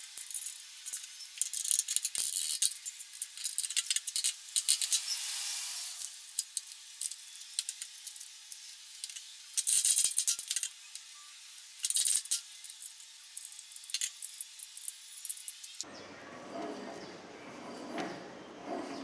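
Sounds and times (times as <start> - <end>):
small metal parts clinking: 0.2 - 5.2, 6.4 - 11.1, 11.7 - 15.8.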